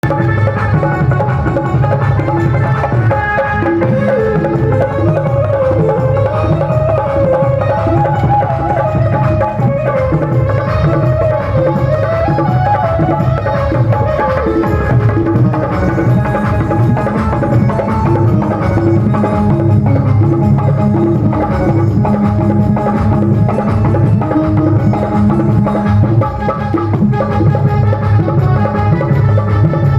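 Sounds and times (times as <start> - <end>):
loud music with drums and bass: 0.0 - 29.9.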